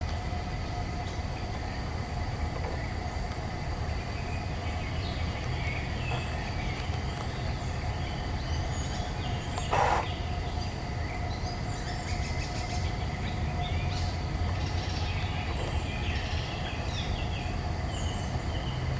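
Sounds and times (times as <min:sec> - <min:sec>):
steady low rumble: 0:00.0 - 0:18.9
small birds calling faintly: 0:00.8 - 0:18.9.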